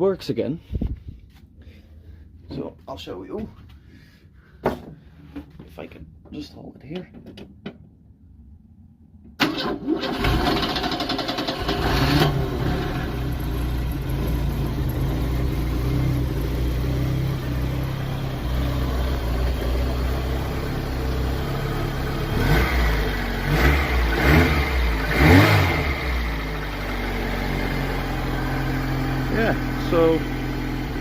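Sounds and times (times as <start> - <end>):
engine cranking: 9.4 - 13.0
car engine idling: 9.5 - 31.0.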